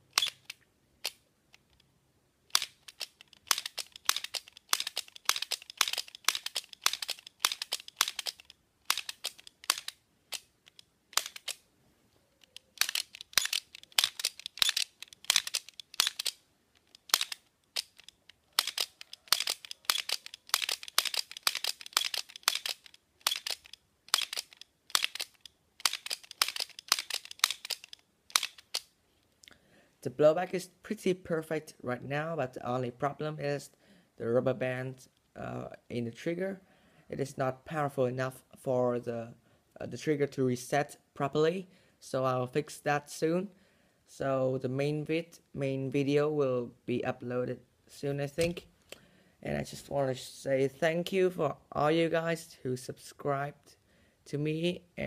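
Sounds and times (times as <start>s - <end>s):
toy pistol plastic clicks: 0.1s - 1.9s, 2.5s - 11.6s, 12.4s - 28.9s.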